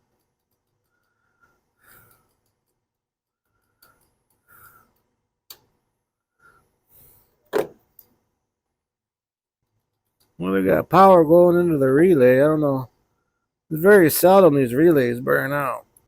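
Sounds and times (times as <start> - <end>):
soft breathing: 0.8 - 2.7, 3.4 - 5.3, 6.2 - 7.4.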